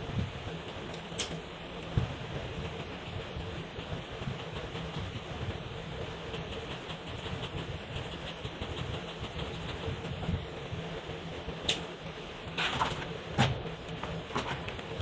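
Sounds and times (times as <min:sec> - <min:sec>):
markers scratching on paper: 0:02.7 - 0:10.8, 0:12.5 - 0:15.0.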